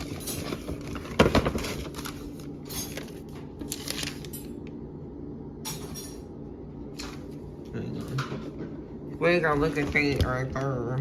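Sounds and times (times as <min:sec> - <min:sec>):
packaging clicks and rustling: 0:00.0 - 0:04.5.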